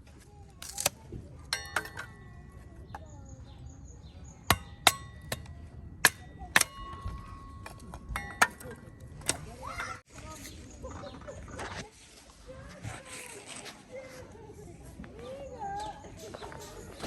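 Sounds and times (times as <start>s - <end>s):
iron parts clanking: 0.6s - 3.6s, 4.3s - 10.0s
metal ringing tone: 1.5s - 3.1s, 4.4s - 10.0s.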